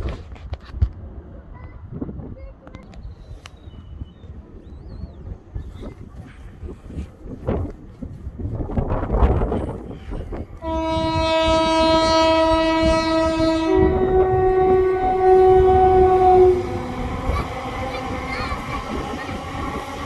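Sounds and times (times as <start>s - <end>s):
train rumbling on track: 0.0s - 20.0s
train horn two-tone blast: 10.6s - 16.9s.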